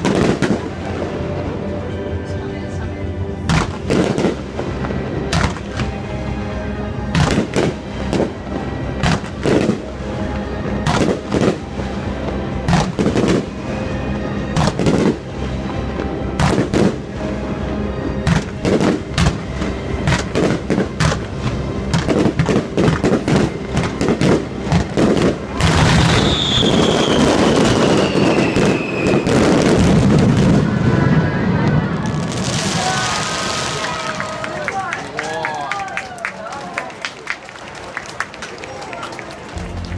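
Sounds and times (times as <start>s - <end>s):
fireworks booming and banging: 0.0s - 1.8s, 3.4s - 6.3s, 7.0s - 34.3s
falling firework whistle: 25.5s - 34.2s.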